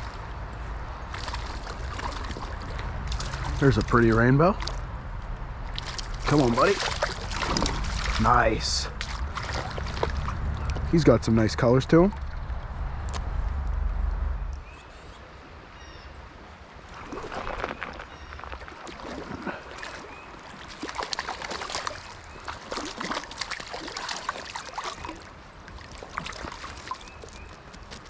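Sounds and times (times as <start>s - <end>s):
water trickling: 0.0s - 5.0s, 5.6s - 11.3s, 16.9s - 28.0s
water splashing and sloshing: 0.0s - 13.7s, 16.4s - 28.0s.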